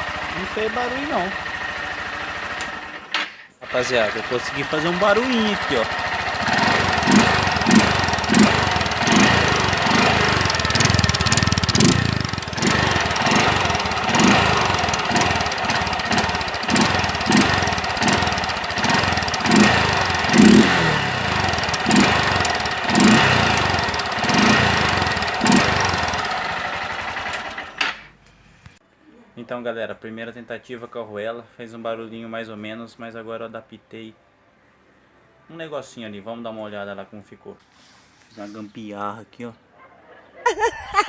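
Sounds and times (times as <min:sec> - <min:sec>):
motorcycle engine revving: 0:00.0 - 0:28.1.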